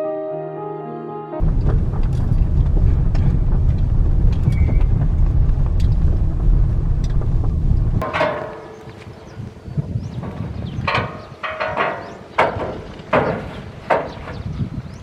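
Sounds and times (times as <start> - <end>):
combine harvester rumbling: 1.4 - 8.8.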